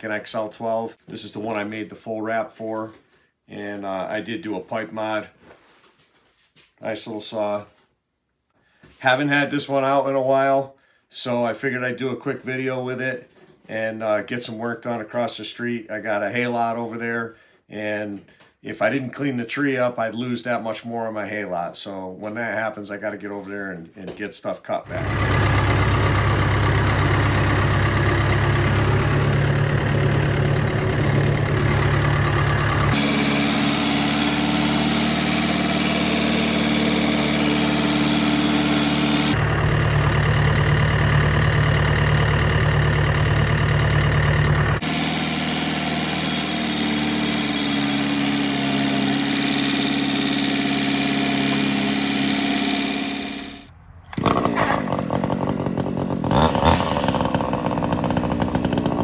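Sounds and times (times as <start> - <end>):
engine idling: 24.9 - 59.0
louder engine sound: 24.9 - 59.0.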